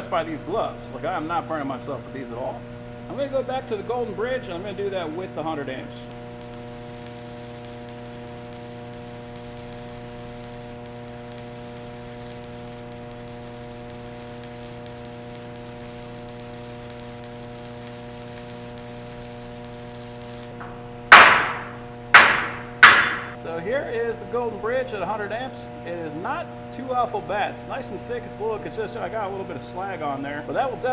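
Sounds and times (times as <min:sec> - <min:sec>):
electrical hum: 0:00.0 - 0:30.9
welding arc sizzling hiss: 0:06.1 - 0:23.4
chipping hammer striking slag: 0:21.1 - 0:23.4.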